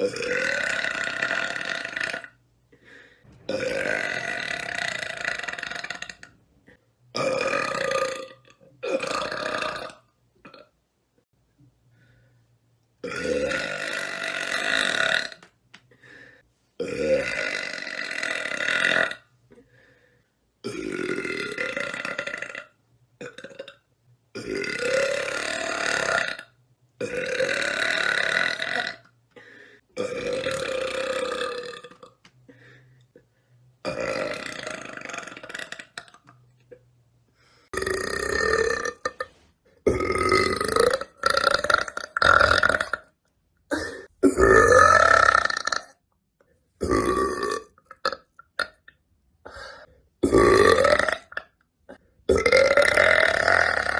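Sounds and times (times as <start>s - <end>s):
woman burping: 3.5s - 6.3s, 33.8s - 36.8s, 43.7s - 46.0s, 50.2s - 53.9s.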